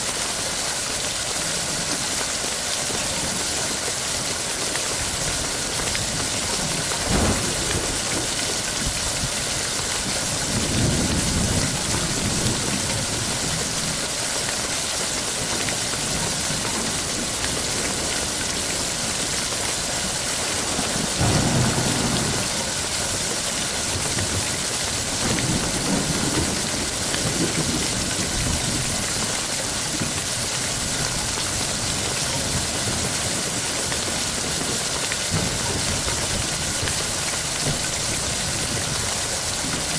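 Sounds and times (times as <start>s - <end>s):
steady rain: 0.0s - 39.9s
thunder rolling: 5.3s - 12.8s, 20.1s - 28.6s.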